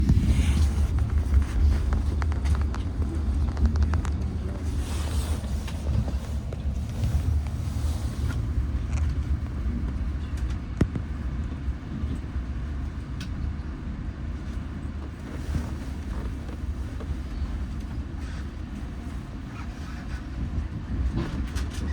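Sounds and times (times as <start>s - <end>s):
steady low rumble: 0.0s - 21.9s.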